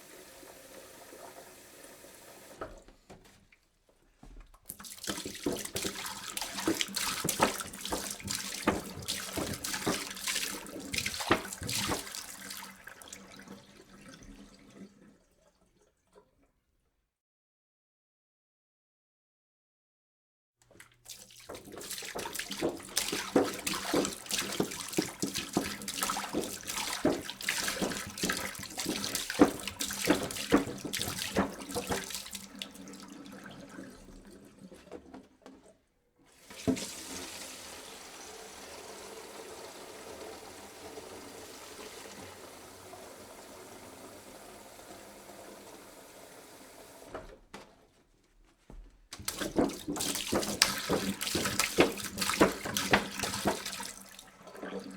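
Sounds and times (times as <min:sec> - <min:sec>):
water pouring into a jug: 0:04.7 - 0:16.4, 0:20.7 - 0:47.1, 0:49.2 - 0:54.9.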